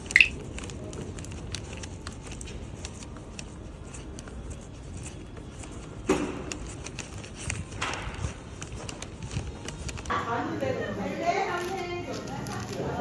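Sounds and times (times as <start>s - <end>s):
scattered clicks and taps: 0.0s - 10.1s.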